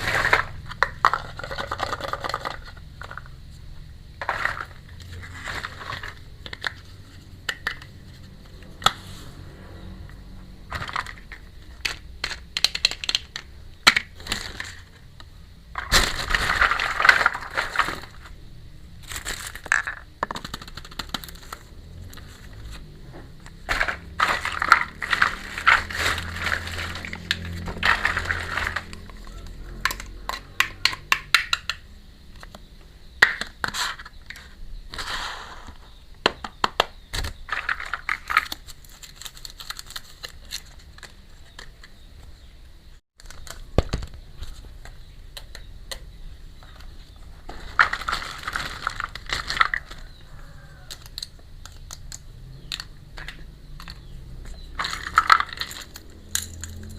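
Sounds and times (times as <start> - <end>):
small plastic pieces clicking: 0.0 - 3.3, 10.7 - 18.3, 19.0 - 22.5, 23.6 - 32.6, 36.3 - 42.0, 43.2 - 46.1, 47.5 - 50.1, 50.8 - 56.9
plastic packaging crinkling: 15.8 - 18.3, 19.0 - 22.8, 23.6 - 29.8, 37.5 - 41.7, 47.5 - 51.9.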